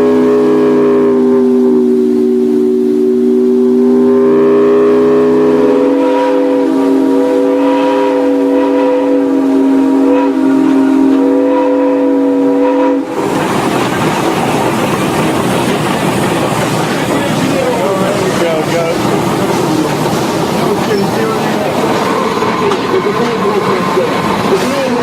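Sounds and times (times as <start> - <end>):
steam locomotive whistle: 0.0 - 13.3
steady rushing noise: 13.0 - 25.0.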